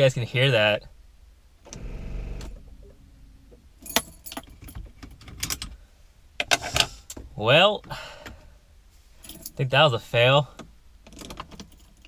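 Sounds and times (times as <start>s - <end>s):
sharp starter clicks: 1.7s - 3.0s
keys jangling in ignition: 3.8s - 5.8s, 9.2s - 9.6s, 11.1s - 12.0s.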